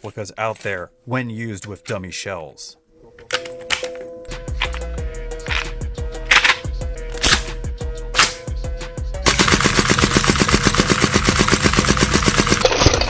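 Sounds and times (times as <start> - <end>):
background music with a beat: 4.3 - 9.3
airsoft gun firing full-auto: 9.3 - 12.7.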